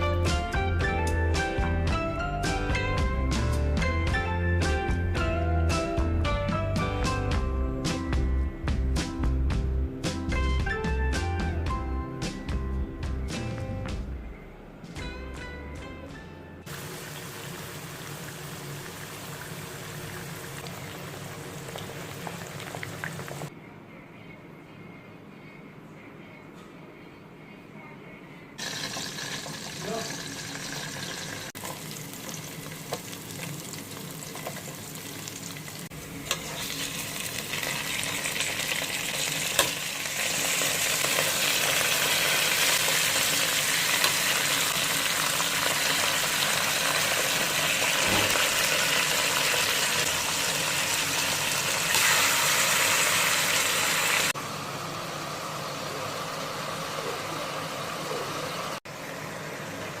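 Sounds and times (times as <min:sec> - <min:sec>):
food sizzling in a pan: 0:16.7 - 0:23.5, 0:28.6 - 0:54.4.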